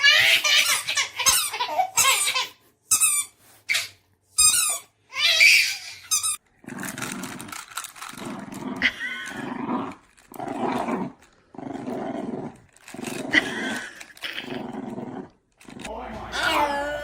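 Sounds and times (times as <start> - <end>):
dog growling: 6.6 - 17.0.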